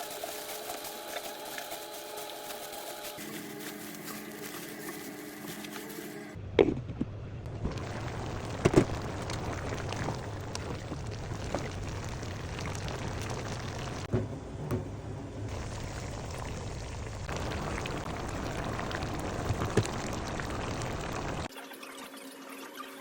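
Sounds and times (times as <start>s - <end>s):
pot of curry bubbling and sizzling: 7.5s - 14.1s, 15.5s - 21.5s.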